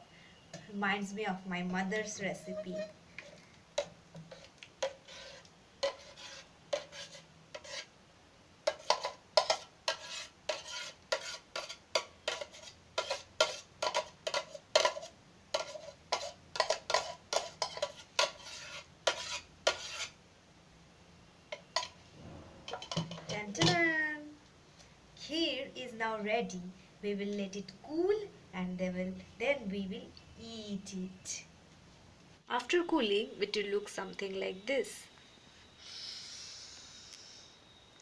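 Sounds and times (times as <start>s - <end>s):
spoon scraping and clinking on bowl: 2.4s - 2.9s, 8.7s - 20.1s.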